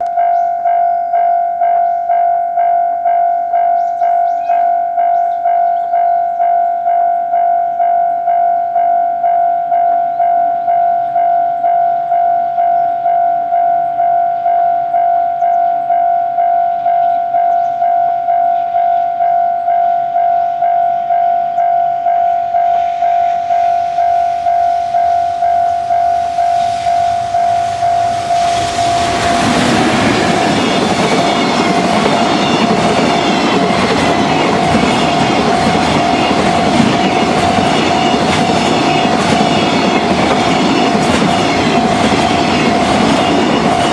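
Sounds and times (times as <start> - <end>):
level crossing bell ringing: 0.0 - 43.9
freight train passing: 9.1 - 43.9
train wheel clatter: 22.4 - 43.9.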